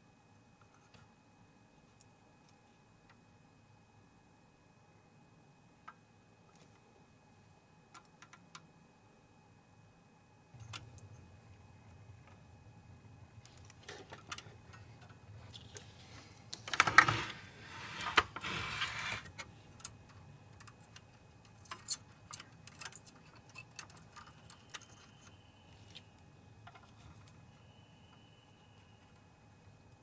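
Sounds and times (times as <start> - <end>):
scraping and rustling: 13.7 - 19.4
small tools clicking and rattling: 19.2 - 26.0.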